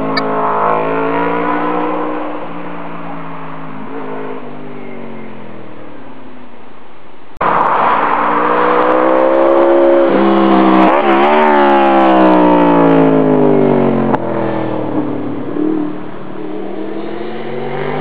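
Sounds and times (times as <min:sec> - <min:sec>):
motorcycle engine revving hard: 0:07.4 - 0:15.9, 0:16.7 - 0:18.0.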